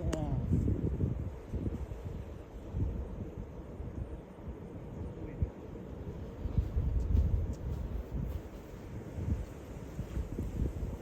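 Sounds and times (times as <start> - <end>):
gusty wind buffeting microphone: 0.0 - 11.0.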